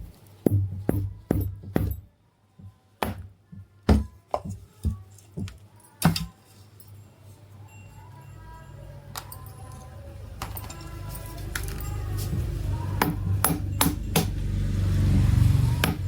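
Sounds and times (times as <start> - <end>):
hand tools knocking on metal: 10.4 - 14.4.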